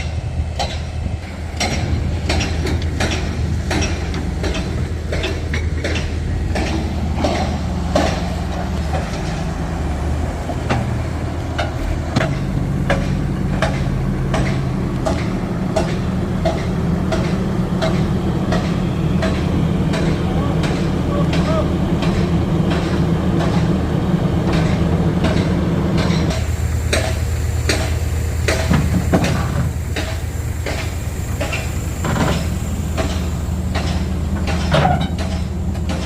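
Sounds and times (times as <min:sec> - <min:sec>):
drilling rig engine drone: 0:00.0 - 0:36.0
sharp metallic clanks: 0:01.6 - 0:09.6, 0:11.6 - 0:23.7, 0:24.4 - 0:36.0.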